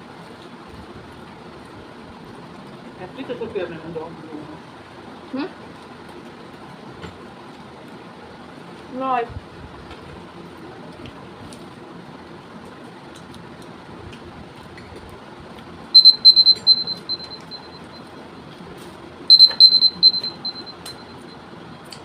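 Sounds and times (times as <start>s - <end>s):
phone timer alarm high beeps: 16.0s - 18.1s, 19.3s - 21.4s.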